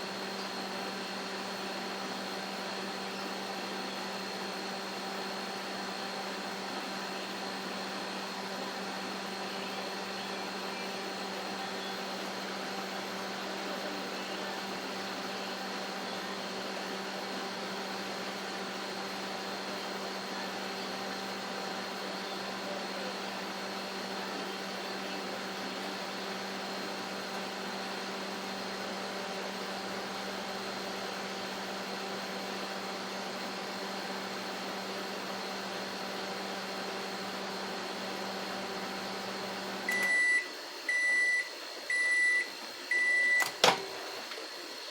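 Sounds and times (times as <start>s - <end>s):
microwave oven humming: 0.0s - 44.9s.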